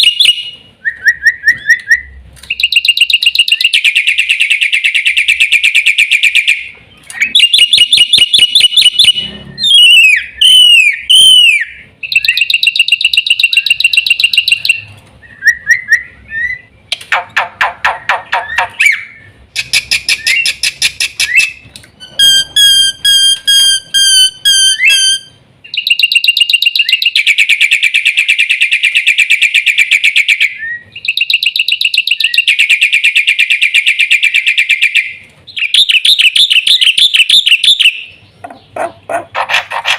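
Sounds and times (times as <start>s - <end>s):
bird singing varied song: 0.0s - 17.0s, 17.8s - 39.6s.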